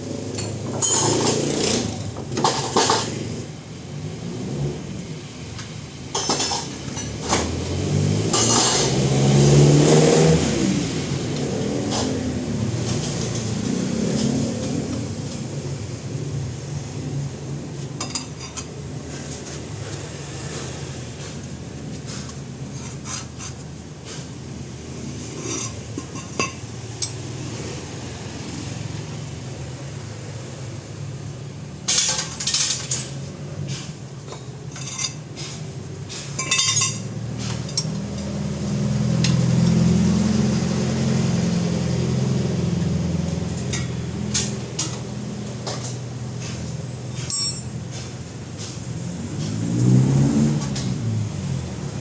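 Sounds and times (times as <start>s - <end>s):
metal tools clinking: 0.3s - 3.2s, 6.2s - 7.3s, 8.4s - 8.9s, 34.3s - 35.6s, 36.2s - 38.4s, 47.1s - 48.2s.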